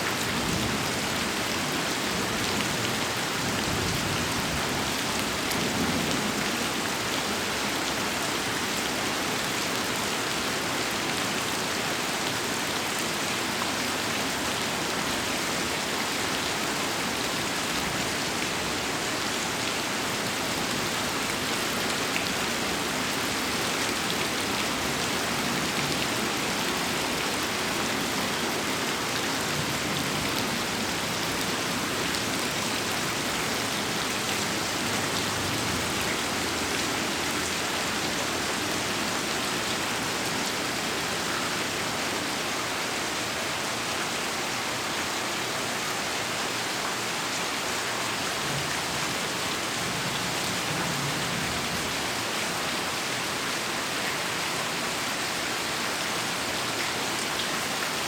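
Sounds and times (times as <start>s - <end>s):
heavy rain: 0.0s - 58.0s.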